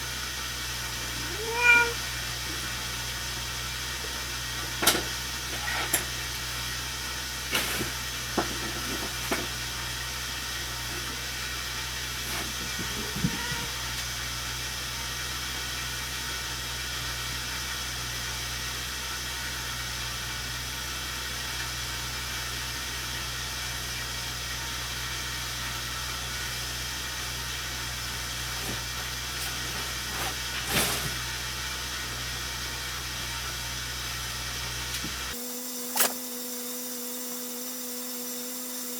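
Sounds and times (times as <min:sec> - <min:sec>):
snow blower engine running: 0:00.0 - 0:01.4, 0:02.0 - 0:36.2.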